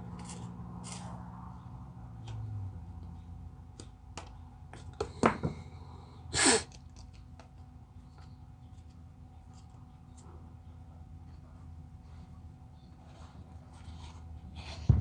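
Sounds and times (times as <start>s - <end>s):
person sneezing: 6.3s - 6.7s.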